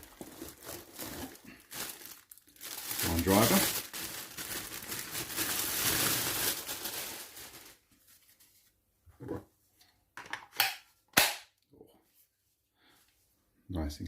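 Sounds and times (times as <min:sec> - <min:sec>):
plastic packaging crinkling: 0:00.0 - 0:08.4.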